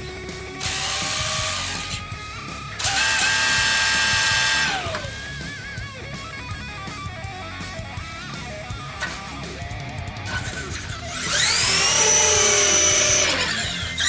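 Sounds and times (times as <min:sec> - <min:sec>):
tyres spinning: 0:00.6 - 0:02.0, 0:11.2 - 0:14.0
electric motors whining: 0:00.6 - 0:02.1, 0:02.8 - 0:05.3, 0:11.1 - 0:14.0.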